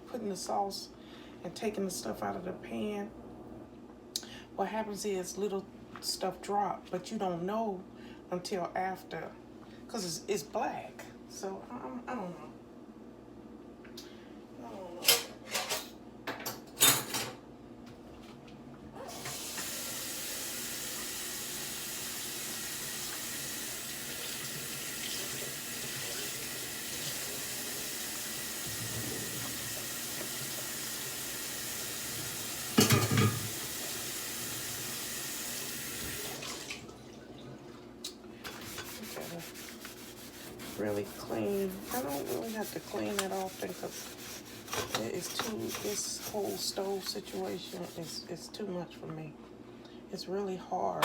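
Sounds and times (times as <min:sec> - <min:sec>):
kitchen tap running: 0:19.1 - 0:37.1, 0:38.4 - 0:48.2.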